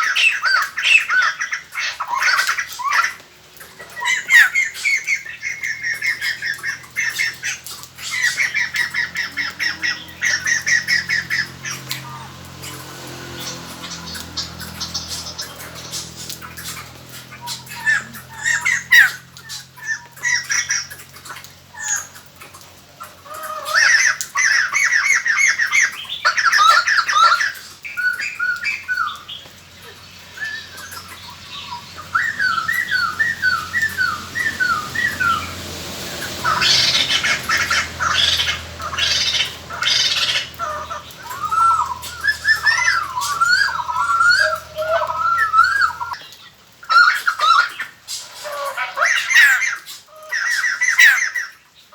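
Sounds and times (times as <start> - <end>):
birds chattering and squawking: 0.0 - 51.9.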